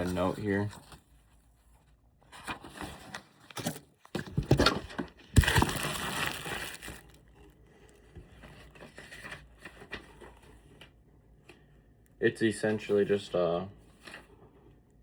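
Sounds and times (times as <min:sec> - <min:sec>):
paper rustling and crinkling: 0:00.0 - 0:11.0.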